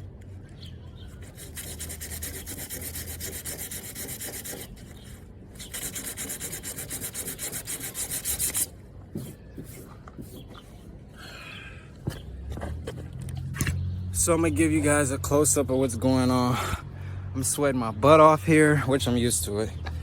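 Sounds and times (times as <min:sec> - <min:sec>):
sanding with rough scraping: 0:01.1 - 0:10.9.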